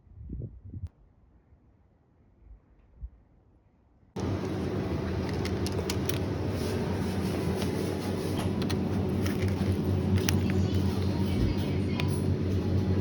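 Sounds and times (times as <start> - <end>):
vehicle hum: 4.2 - 13.0.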